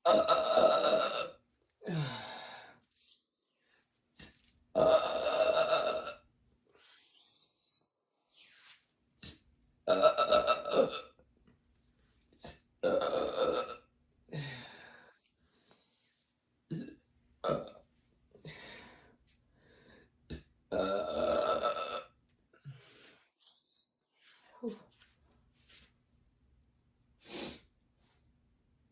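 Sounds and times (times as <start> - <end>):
woman burping: 0.0 - 2.2, 4.8 - 6.2, 9.9 - 11.2, 12.4 - 14.4, 16.7 - 17.8, 20.3 - 22.1.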